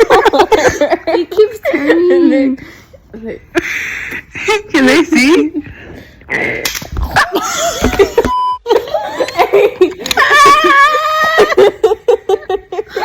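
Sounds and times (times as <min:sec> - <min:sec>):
girls laughing and squealing: 0:07.0 - 0:13.0
short steady beep: 0:08.3 - 0:08.6.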